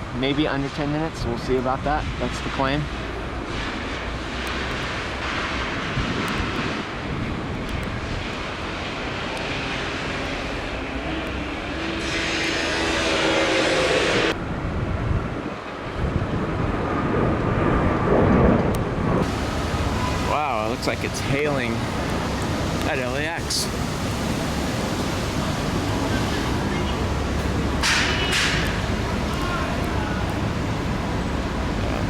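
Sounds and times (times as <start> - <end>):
airport traffic: 0.0 - 14.6, 19.2 - 32.0
jet aircraft noise: 4.4 - 32.0
hiss and low whine: 19.2 - 32.0.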